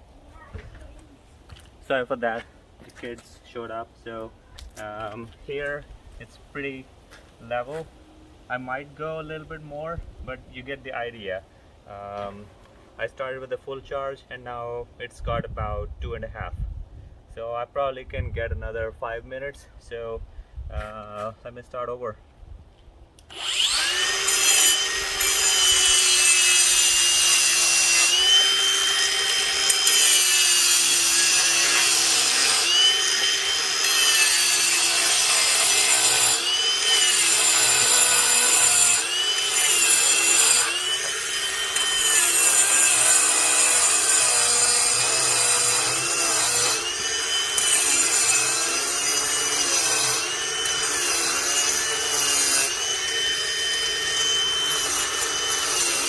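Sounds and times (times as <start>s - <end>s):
angle grinder grinding concrete: 23.3s - 56.0s.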